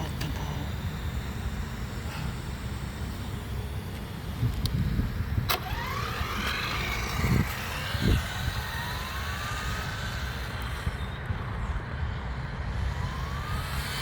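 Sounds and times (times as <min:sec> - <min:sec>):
electric motor whining: 0:00.0 - 0:14.0
steady low rumble: 0:00.0 - 0:14.0.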